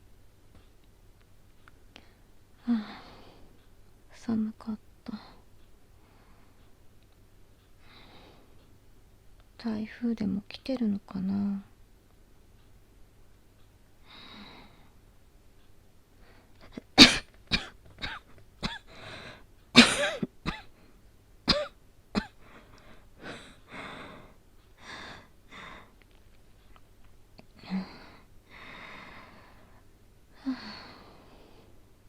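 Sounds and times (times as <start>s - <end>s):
labored breathing: 7.8s - 8.7s, 18.9s - 19.5s, 22.4s - 26.0s, 27.6s - 31.9s
woman coughing: 16.7s - 18.9s, 19.8s - 20.7s, 21.5s - 22.4s.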